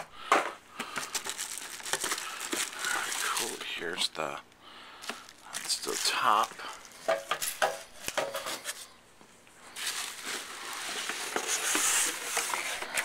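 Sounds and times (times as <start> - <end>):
packaging clicks and knocks: 0.3 - 3.4
wrapping rustling and crinkling: 0.8 - 4.0, 5.0 - 8.9, 9.7 - 13.0.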